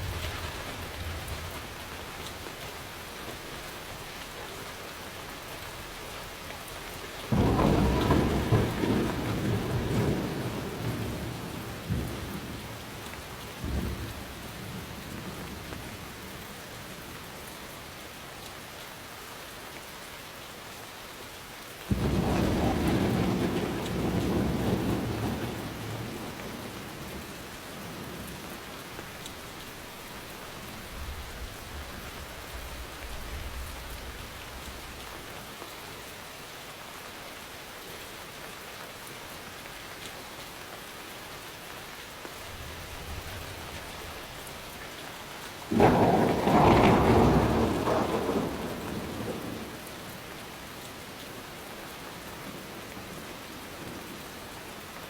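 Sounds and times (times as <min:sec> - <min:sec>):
faint low thunder rumble: 0:00.0 - 0:06.4, 0:07.0 - 0:17.2, 0:21.9 - 0:35.3, 0:45.6 - 0:51.5
steady rain falling: 0:00.0 - 0:55.0
loud thunderclap rumbling: 0:07.3 - 0:15.6, 0:21.9 - 0:29.1, 0:45.7 - 0:50.1.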